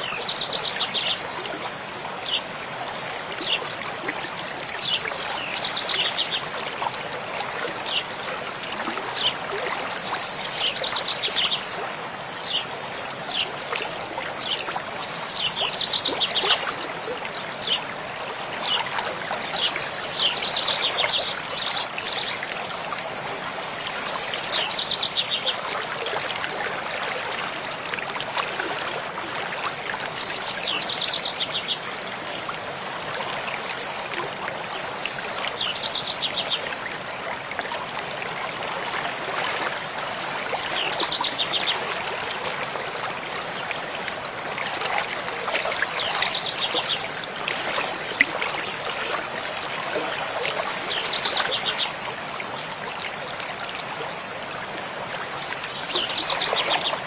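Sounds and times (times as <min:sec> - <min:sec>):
stream flowing over rocks: 0:00.0 - 0:57.0
songbird singing: 0:35.0 - 0:36.9, 0:55.4 - 0:57.0.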